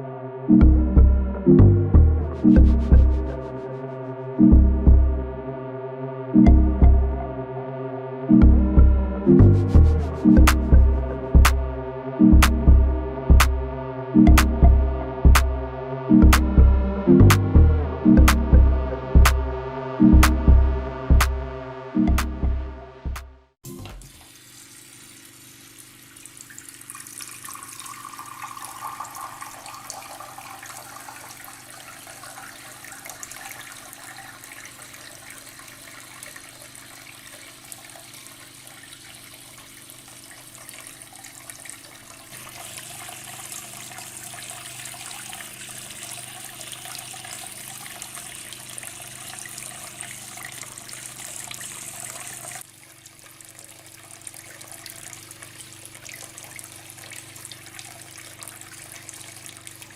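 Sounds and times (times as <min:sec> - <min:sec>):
fountain water trickling and splashing: 0:23.9 - 0:59.9
faint steady hum: 0:24.9 - 0:59.9.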